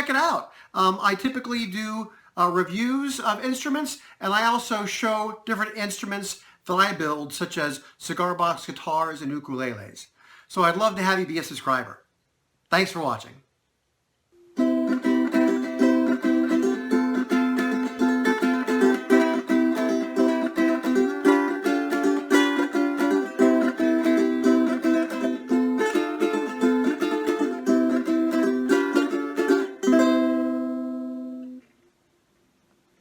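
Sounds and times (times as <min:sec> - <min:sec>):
picked ukulele music: 0:14.4 - 0:31.6.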